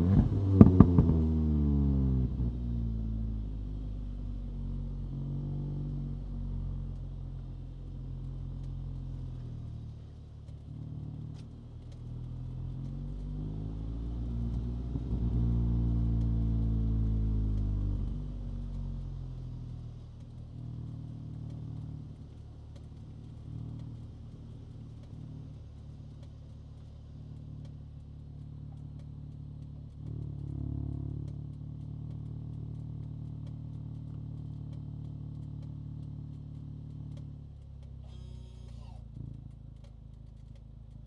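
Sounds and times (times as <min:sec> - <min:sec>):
car engine running at low revs: 0:00.0 - 0:41.0.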